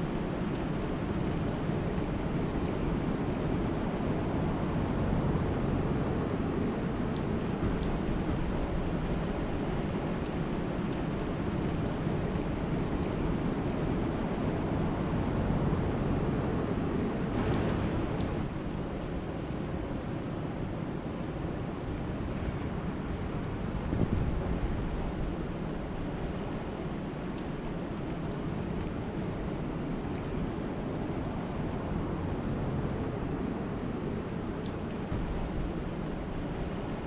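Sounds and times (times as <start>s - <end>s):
faint high ticks: 0.5s - 1.4s, 9.8s - 12.5s, 27.3s - 27.6s.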